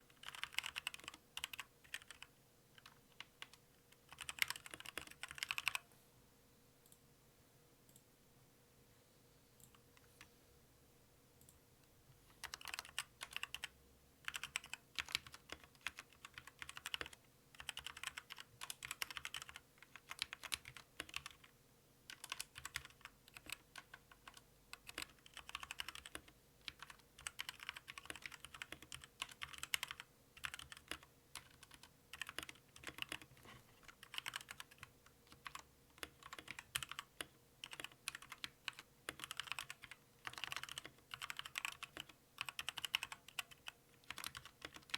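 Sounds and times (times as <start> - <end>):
mechanical keyboard typing: 0.1 - 5.8, 12.4 - 21.5, 22.1 - 44.9.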